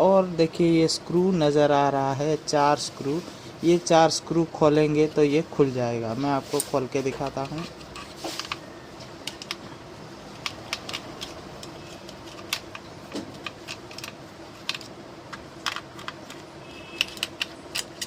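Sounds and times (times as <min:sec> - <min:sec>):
screwdriver clicking on screws: 0:10.3 - 0:18.0.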